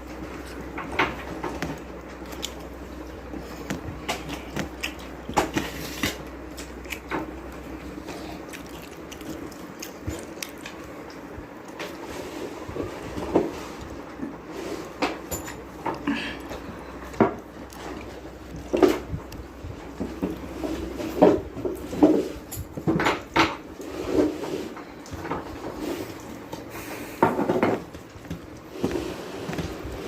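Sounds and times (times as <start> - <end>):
person chewing: 0.0 - 11.8, 13.7 - 21.1.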